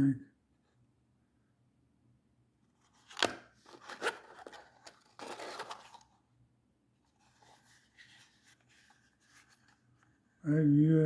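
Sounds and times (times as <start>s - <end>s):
packaging rustling: 2.9s - 6.2s.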